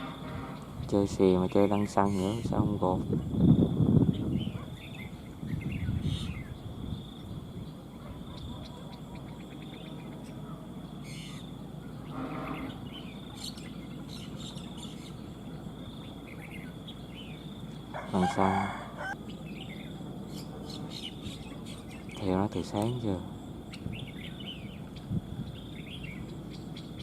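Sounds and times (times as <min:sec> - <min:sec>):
birds chirping: 0:00.0 - 0:27.0
high insect drone: 0:00.0 - 0:27.0.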